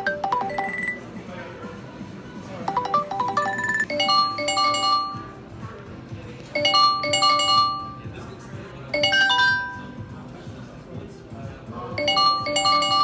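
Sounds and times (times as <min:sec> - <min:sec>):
phone ringtone chimes: 0:00.0 - 0:01.1, 0:02.6 - 0:05.4, 0:06.6 - 0:08.0, 0:09.0 - 0:09.9, 0:12.0 - 0:13.0.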